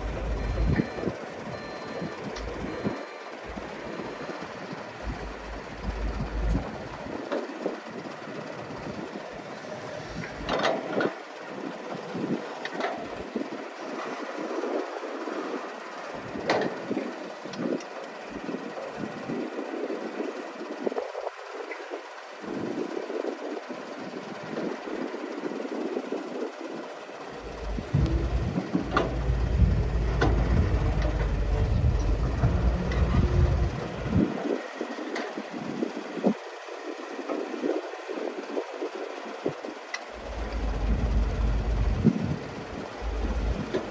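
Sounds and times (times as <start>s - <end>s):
excavator engine rumbling: 0.0s - 19.6s, 27.2s - 38.0s, 39.2s - 43.9s.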